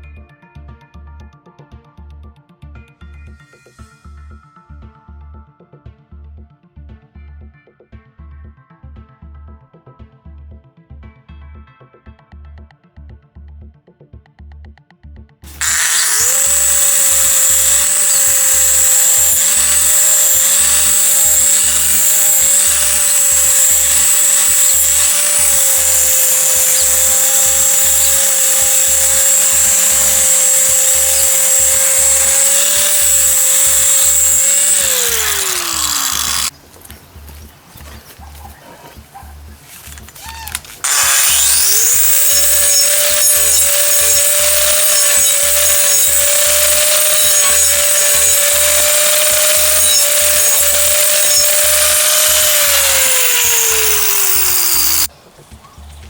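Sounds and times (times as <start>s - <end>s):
electric power tool motor whine: 15.5s - 36.5s, 40.5s - 55.1s.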